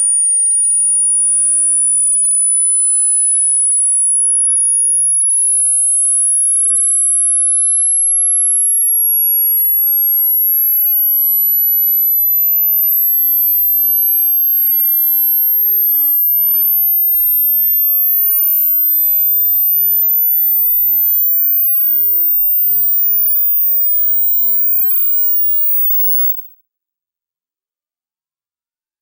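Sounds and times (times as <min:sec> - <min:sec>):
high pure sine tone sweeping upward: 0:10.6 - 0:26.5.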